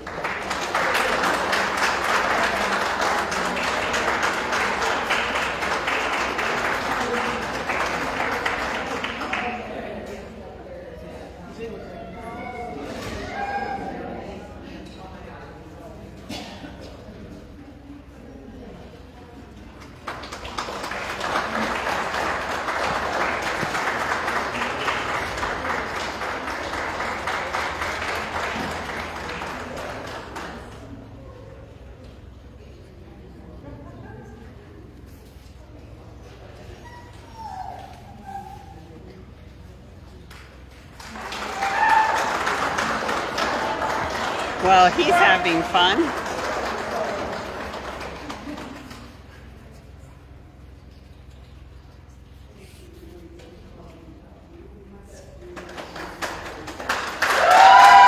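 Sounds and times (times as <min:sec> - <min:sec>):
audience applauding: 0:00.0 - 0:09.8, 0:20.1 - 0:30.8, 0:40.9 - 0:49.1, 0:55.6 - 0:58.0.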